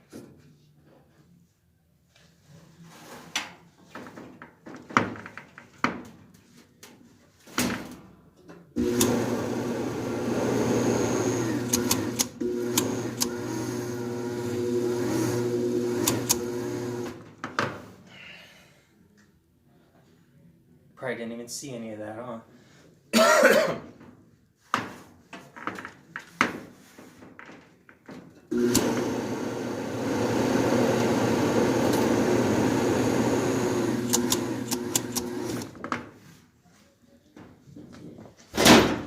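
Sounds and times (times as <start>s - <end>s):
motor electric hum: 8.8s - 17.2s, 28.5s - 35.7s.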